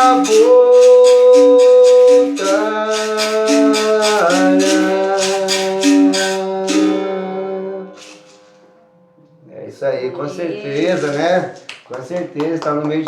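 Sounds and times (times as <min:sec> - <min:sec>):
caxixi rattle shaking: 0:00.0 - 0:07.1
person singing a hymn: 0:00.0 - 0:08.4, 0:10.0 - 0:11.2
berimbau low tones: 0:00.0 - 0:11.4.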